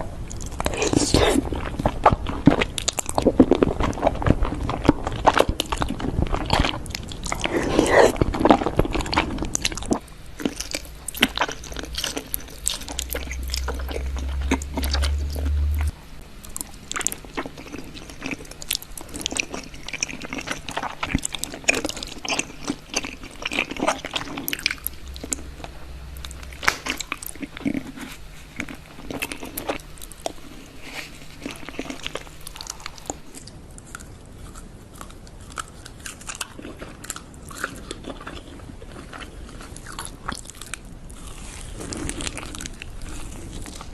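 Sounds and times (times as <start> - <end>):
crunching and chewing crisp food: 0.0 - 43.9
low hum: 9.9 - 19.1, 22.9 - 33.9.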